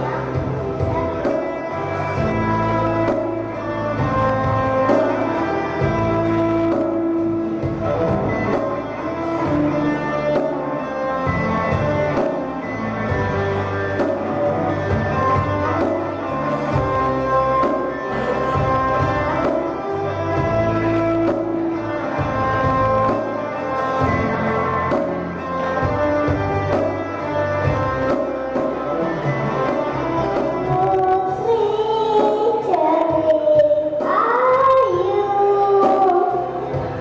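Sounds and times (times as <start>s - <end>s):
instrumental backing music: 0.0s - 37.0s
child singing: 30.6s - 36.7s.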